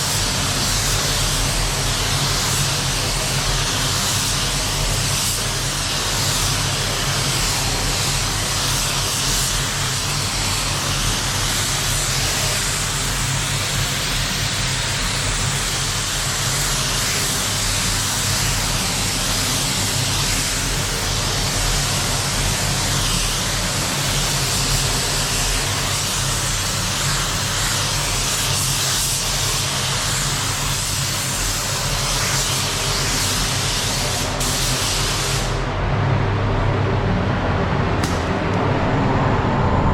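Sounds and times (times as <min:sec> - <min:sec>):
paint spray gun hissing: 0:32.1 - 0:35.5
air equipment humming: 0:34.0 - 0:39.9.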